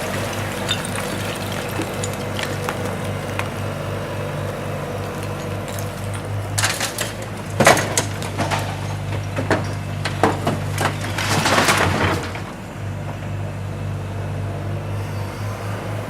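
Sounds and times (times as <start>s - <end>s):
brick and debris clattering: 0.0s - 3.6s, 5.1s - 12.5s
rubble crackling rush: 0.0s - 9.4s
diesel loader running: 0.0s - 16.0s.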